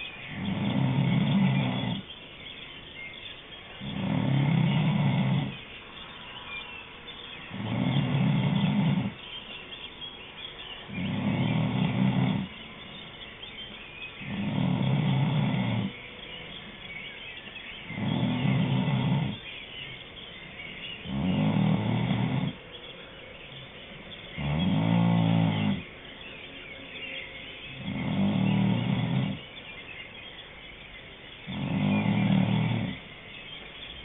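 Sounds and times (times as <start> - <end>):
loud low snoring: 0.0 - 2.2, 3.8 - 5.9, 7.4 - 9.4, 10.8 - 13.1, 14.1 - 17.0, 17.7 - 19.6, 20.8 - 29.8, 31.4 - 33.6.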